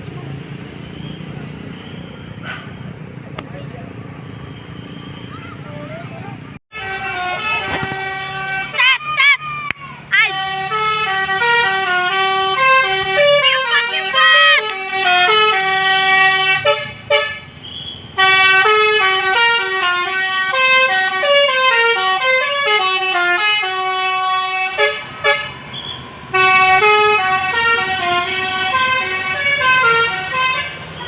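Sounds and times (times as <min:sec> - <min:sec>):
musical bus horn melody: 0:06.7 - 0:09.0, 0:10.2 - 0:31.0.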